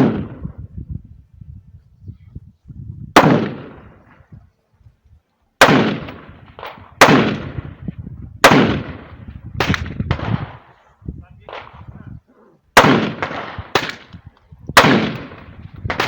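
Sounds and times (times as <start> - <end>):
rifle shots echoing: 0.0 - 0.6, 3.2 - 4.2, 5.6 - 10.8, 11.4 - 11.9, 12.7 - 14.2, 14.8 - 16.0.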